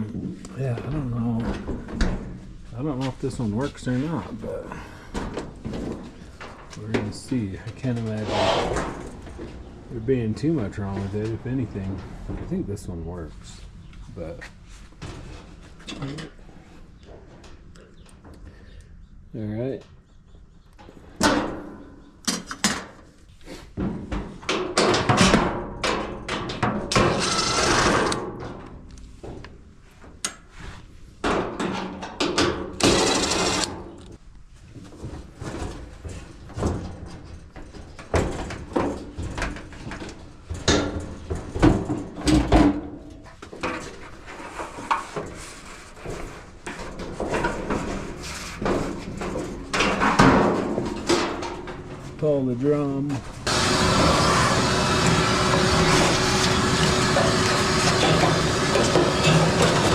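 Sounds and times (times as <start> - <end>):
sheet metal panels knocking and scraping: 23.7 - 29.4, 31.2 - 34.0, 35.0 - 52.3, 53.2 - 59.9.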